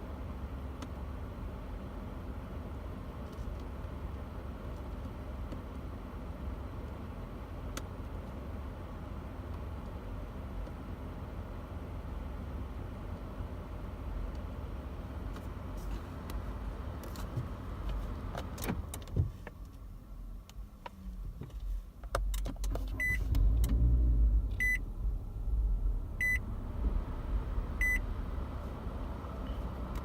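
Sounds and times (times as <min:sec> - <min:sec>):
car dashboard chime beeps: 0:23.0 - 0:23.2, 0:24.6 - 0:24.8, 0:26.2 - 0:26.4, 0:27.8 - 0:28.1
low rumble: 0:23.0 - 0:30.0.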